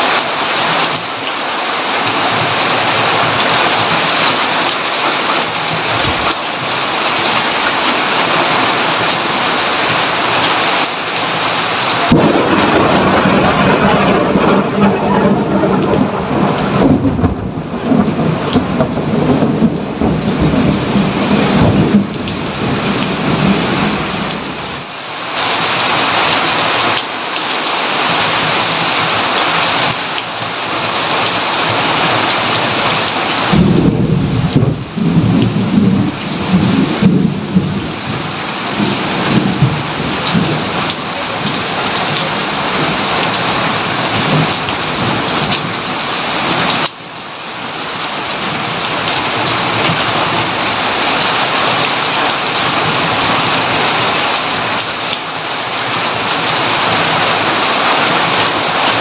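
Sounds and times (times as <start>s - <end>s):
heavy rain: 0.0s - 59.0s
rolling thunder: 12.0s - 24.7s, 32.4s - 45.9s.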